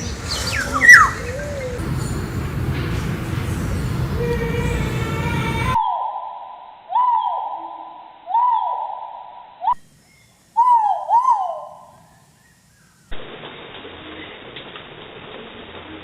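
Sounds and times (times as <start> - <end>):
pheasant calling: 0.0 - 2.1, 6.9 - 11.9
steady hiss: 0.0 - 5.8, 9.8 - 16.0.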